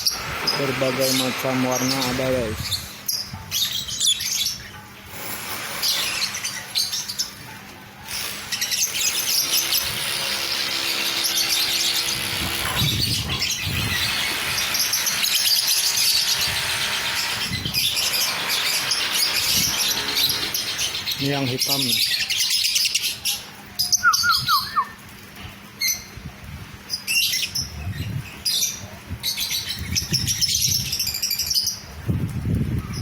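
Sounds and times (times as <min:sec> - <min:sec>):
flock of birds chattering: 0:00.0 - 0:24.6.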